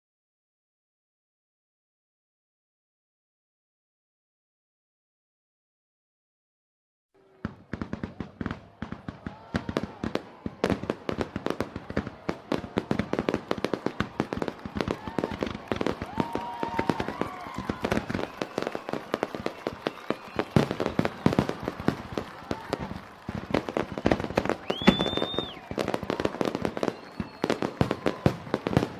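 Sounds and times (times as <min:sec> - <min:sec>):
fireworks and firecrackers banging: 0:07.2 - 0:28.9.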